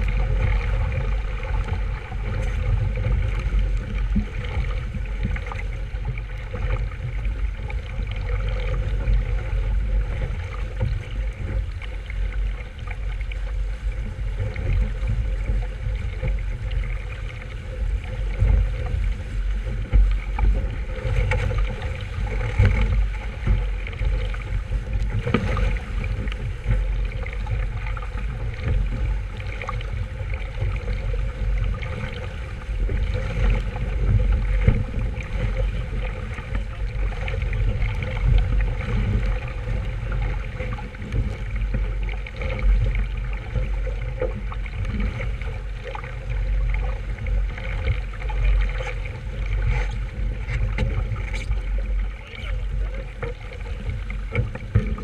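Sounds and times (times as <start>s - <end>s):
wind buffeting microphone: 0.0s - 12.6s
water washing along hull: 0.0s - 55.0s.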